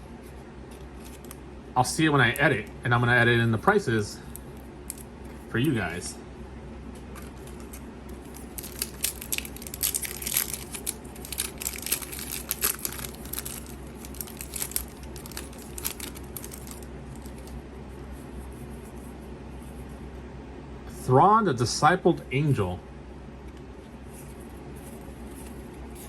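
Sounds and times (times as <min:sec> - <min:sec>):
foil wrapper crinkling and tearing: 0:07.2 - 0:17.6.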